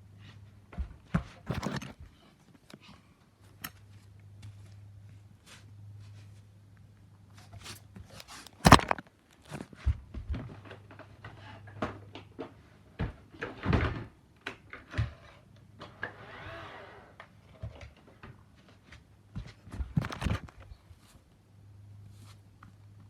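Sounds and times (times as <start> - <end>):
robot vacuum knocks and thuds: 8.6 - 9.6.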